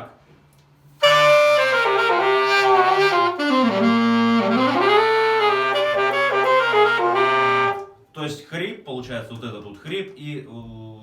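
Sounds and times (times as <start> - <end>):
saxophone with growl: 1.0 - 7.9.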